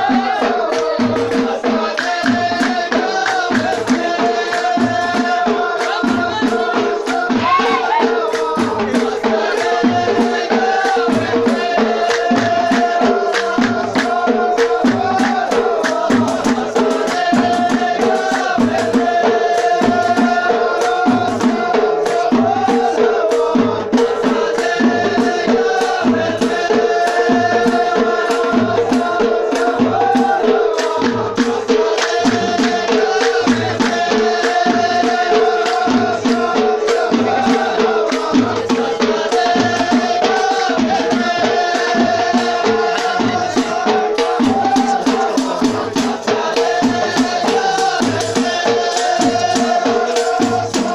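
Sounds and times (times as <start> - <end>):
hand drums: 0.0 - 50.9
rattling percussion: 0.0 - 50.9
voices singing folk music: 0.0 - 50.9.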